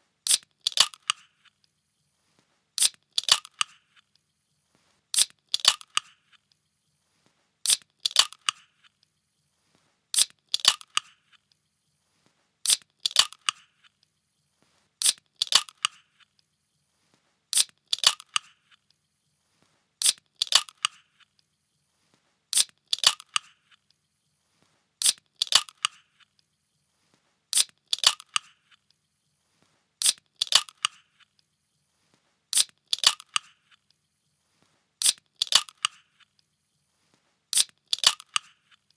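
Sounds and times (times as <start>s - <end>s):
can opening crack and snap: 2.8s - 3.8s, 5.2s - 6.1s, 7.7s - 8.6s, 10.2s - 11.1s, 12.7s - 13.6s, 15.0s - 16.0s, 17.6s - 18.5s, 20.0s - 21.0s, 22.6s - 23.5s, 25.0s - 26.0s, 27.6s - 28.5s, 30.0s - 31.0s, 32.6s - 33.5s, 35.0s - 36.0s, 37.6s - 38.5s.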